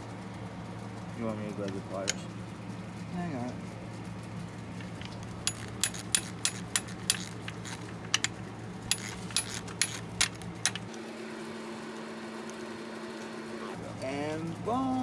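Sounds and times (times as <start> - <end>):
hand tool clicking on a bolt: 4.8 - 10.9
low steady hum: 13.7 - 15.0.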